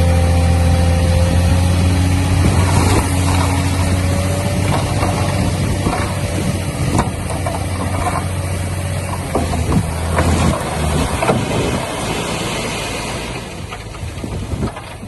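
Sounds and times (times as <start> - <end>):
diesel engine droning: 0.0 - 15.0
metal and stone clanks: 2.4 - 12.0.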